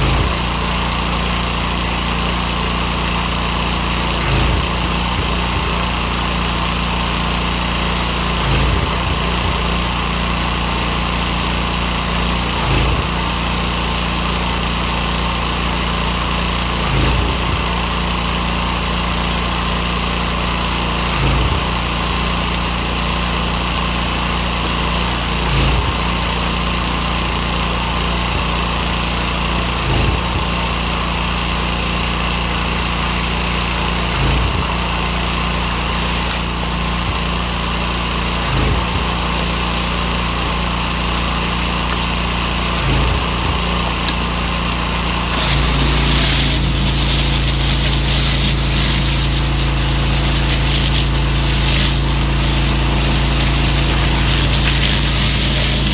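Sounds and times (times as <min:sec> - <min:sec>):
small engine running: 0:00.0 - 0:55.9
water jet hissing: 0:45.2 - 0:55.9.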